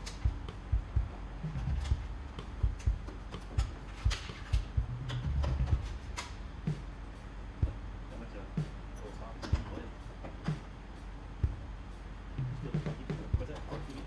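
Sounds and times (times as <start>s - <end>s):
hand tools clicking and knocking: 0.0s - 0.6s, 1.6s - 6.4s, 9.3s - 10.6s, 13.4s - 14.0s
low hum: 0.0s - 14.0s.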